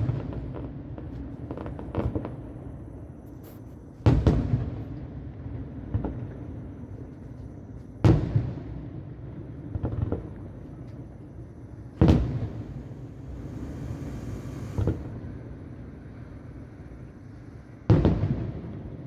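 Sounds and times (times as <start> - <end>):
smaller firework bangs: 9.7 - 15.1
fireworks booming: 9.7 - 15.3
high crackling hiss: 10.2 - 15.2.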